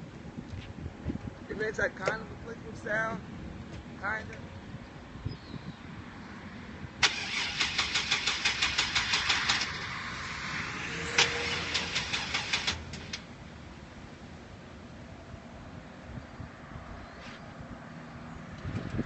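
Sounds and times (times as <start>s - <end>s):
starter clicking rapidly: 7.0s - 9.9s, 11.2s - 13.2s.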